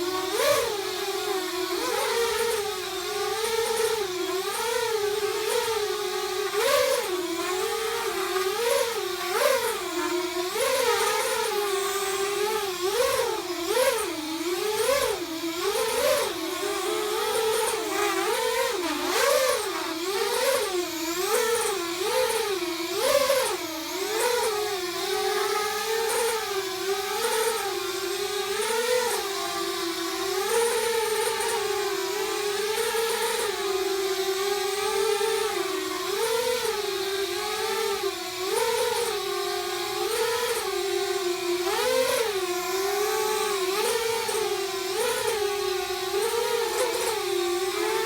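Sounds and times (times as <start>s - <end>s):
car whining under acceleration: 0.0s - 29.5s.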